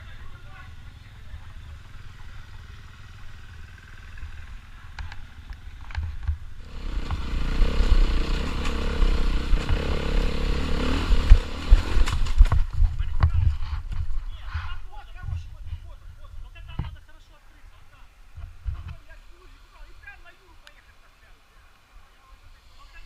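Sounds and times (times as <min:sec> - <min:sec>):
motorcycle engine running hard: 0:00.0 - 0:12.7.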